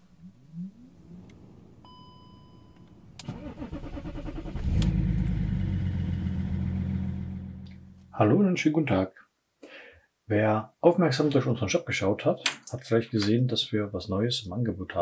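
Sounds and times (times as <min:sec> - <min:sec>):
short electronic beep: 0:01.8 - 0:03.0
car engine idling: 0:03.0 - 0:08.2
starter motor cranking: 0:03.2 - 0:05.0.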